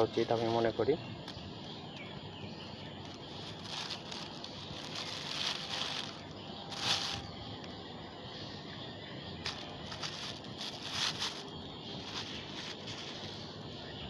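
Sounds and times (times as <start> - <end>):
plastic bag crinkling: 3.0 - 7.4, 9.4 - 13.3.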